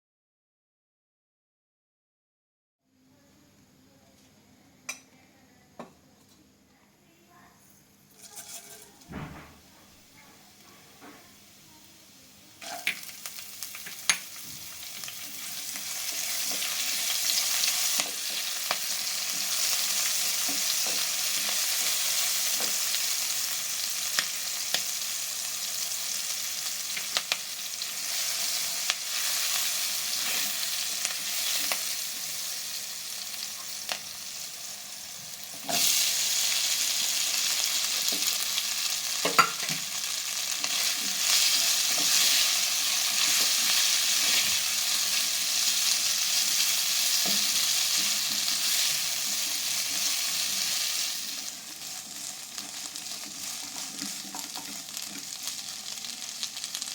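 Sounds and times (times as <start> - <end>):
food sizzling in oil: 8.1 - 9.7, 11.3 - 56.9.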